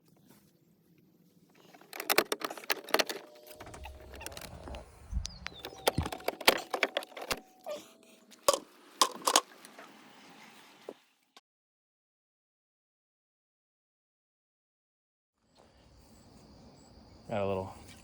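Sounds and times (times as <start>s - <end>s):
hard parts clicking and rattling: 1.6s - 7.5s
low rumble: 3.6s - 5.9s.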